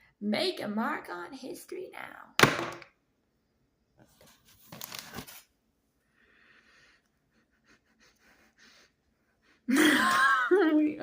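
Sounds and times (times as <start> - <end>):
rustling crinkling noise: 4.0 - 5.6.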